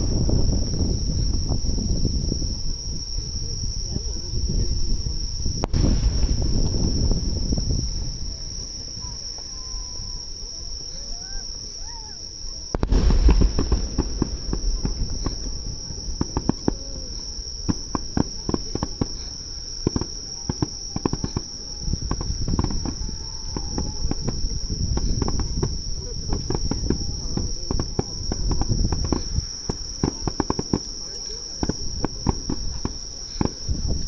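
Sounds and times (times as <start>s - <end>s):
low rumbles: 0.0s - 10.5s, 12.7s - 19.8s
crackles: 0.0s - 34.0s
crickets chirping: 0.0s - 34.0s.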